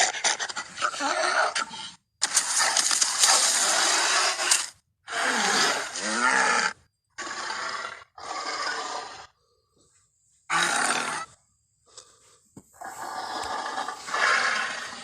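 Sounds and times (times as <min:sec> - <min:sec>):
giant gorilla roaring: 0:10.5 - 0:11.3.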